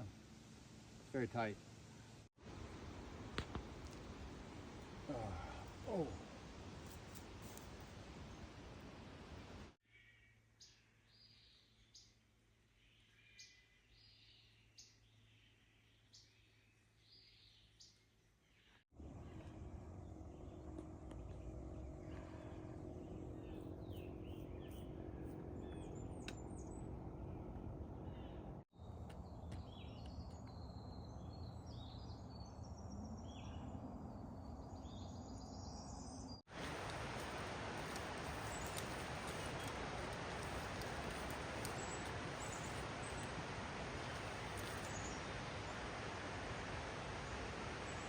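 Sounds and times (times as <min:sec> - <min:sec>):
outdoor background noise: 0:00.0 - 0:48.0
small birds chirping: 0:12.8 - 0:27.4, 0:34.6 - 0:43.4, 0:44.0 - 0:45.3.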